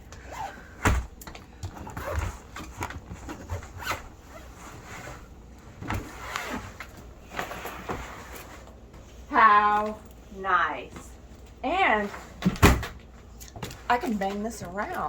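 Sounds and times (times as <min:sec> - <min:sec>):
suitcase zipper opening: 0:01.8 - 0:08.6.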